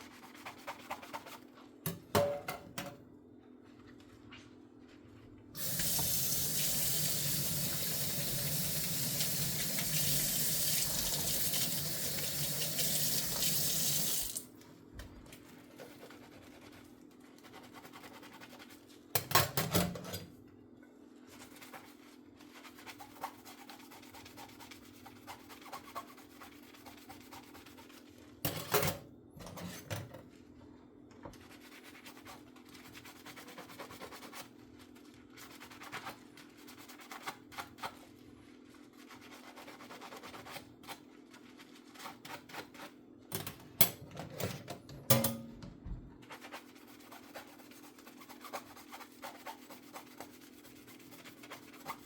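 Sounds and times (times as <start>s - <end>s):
sponge scrubbing dishes: 0.0s - 1.6s, 15.5s - 19.0s, 21.2s - 28.4s, 31.4s - 43.0s, 46.2s - 52.0s.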